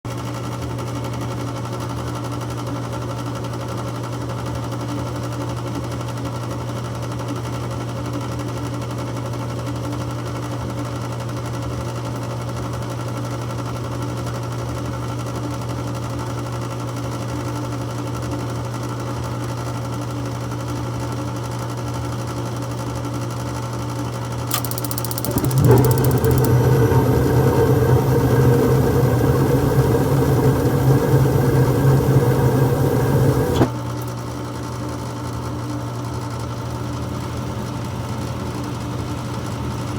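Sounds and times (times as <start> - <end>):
rough burner rush: 24.5 - 33.7
furnace motor hum: 24.5 - 33.8
click: 24.5 - 34.1.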